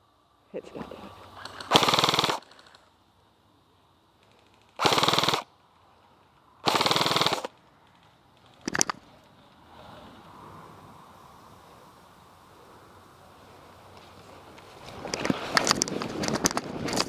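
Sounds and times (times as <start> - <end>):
airsoft rifle full-auto bursts: 1.6 - 2.7, 4.8 - 5.5, 6.6 - 7.5.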